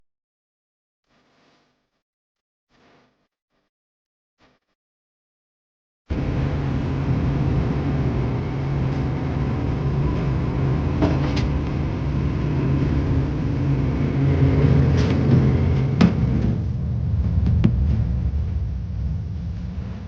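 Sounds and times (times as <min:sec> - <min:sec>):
low mechanical hum: 0:06.1 - 0:20.0.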